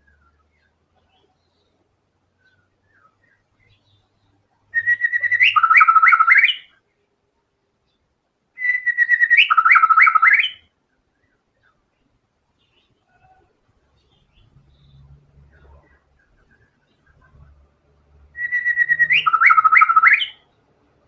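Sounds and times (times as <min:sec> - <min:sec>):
bird singing whistled phrases: 0:04.7 - 0:06.7, 0:08.6 - 0:10.7, 0:18.4 - 0:20.4.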